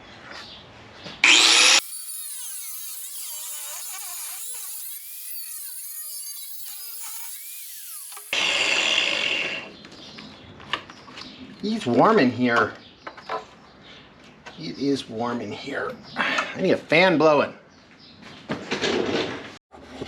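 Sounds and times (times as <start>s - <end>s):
angle grinder cutting metal: 1.2s - 9.7s.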